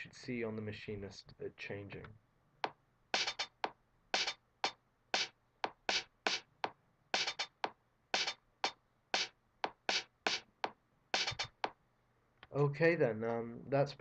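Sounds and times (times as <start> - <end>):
drum machine percussion hits: 2.6 - 11.8.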